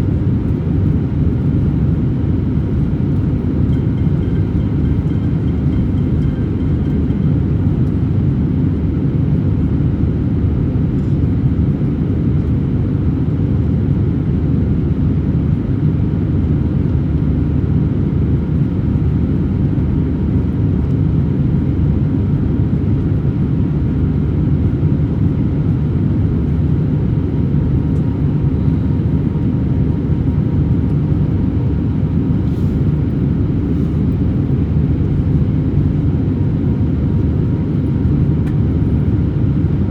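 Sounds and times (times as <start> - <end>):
airliner cabin engine rumble: 0.0 - 39.9
faint steady whine: 2.5 - 8.2.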